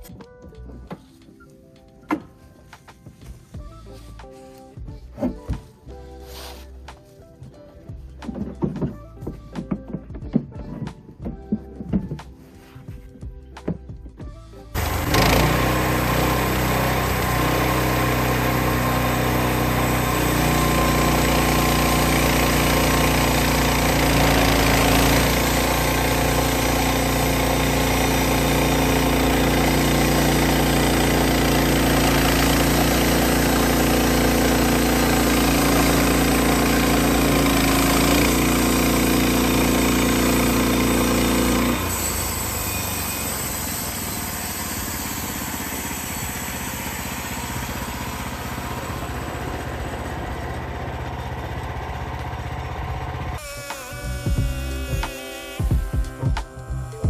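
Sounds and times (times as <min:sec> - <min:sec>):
sawmill engine running: 0:14.7 - 0:57.0.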